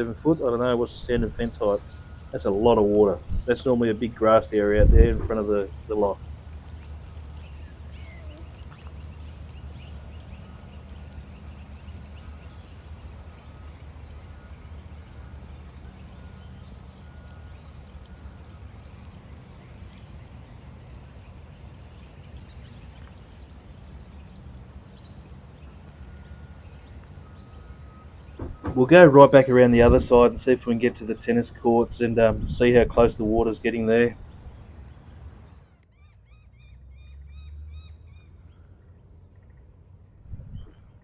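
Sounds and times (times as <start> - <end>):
steady low rumble: 0.0 - 25.7, 28.3 - 35.5, 40.1 - 41.0
small animals chirping: 7.4 - 9.2.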